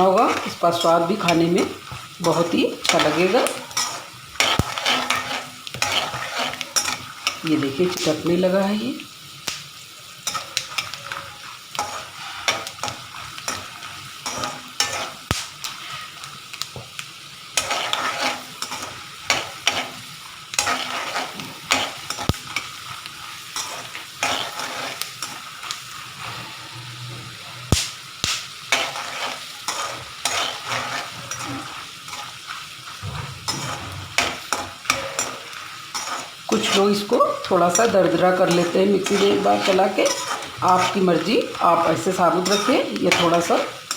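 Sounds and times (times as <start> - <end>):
spatula scraping a pan: 0.0 - 8.5, 10.0 - 27.7, 28.5 - 43.9
peanuts sizzling in a pan: 0.0 - 43.9.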